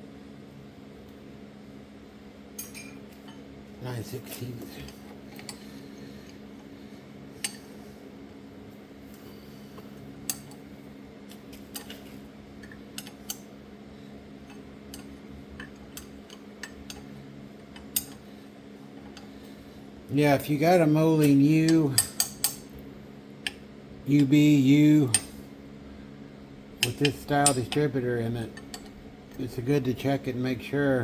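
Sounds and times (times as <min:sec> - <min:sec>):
steady low hum: 0:00.0 - 0:31.0
wrench clinking on metal: 0:02.6 - 0:03.4, 0:10.3 - 0:10.6, 0:17.8 - 0:18.2, 0:21.2 - 0:22.7, 0:25.1 - 0:25.4, 0:26.8 - 0:29.5.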